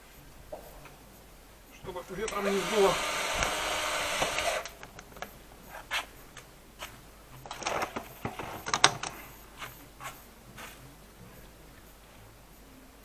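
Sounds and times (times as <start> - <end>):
burst of noise: 1.8 - 4.9
tools clicking and knocking: 7.4 - 9.2.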